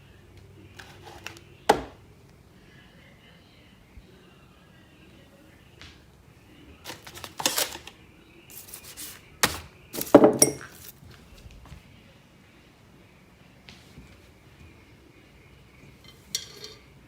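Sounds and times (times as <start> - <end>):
hard objects clattering and clinking: 6.9 - 7.9, 16.0 - 16.9.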